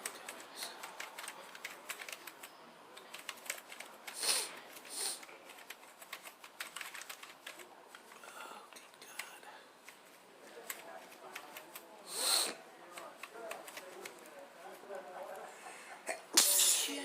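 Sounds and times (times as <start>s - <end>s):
person sniffing: 4.1s - 5.3s, 12.0s - 12.6s, 16.4s - 17.0s.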